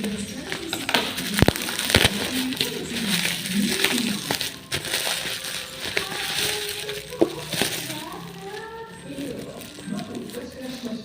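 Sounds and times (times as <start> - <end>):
faint voices: 0.0 - 11.0
packaging crinkling and rustling: 0.0 - 11.0.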